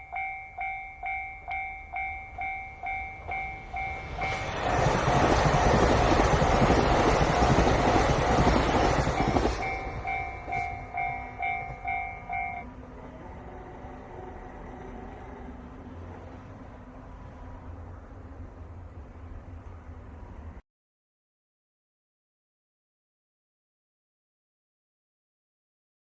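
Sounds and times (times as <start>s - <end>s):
level crossing warning bell dinging: 0.0s - 5.3s, 8.8s - 12.8s
diesel train rushing past: 0.0s - 20.6s.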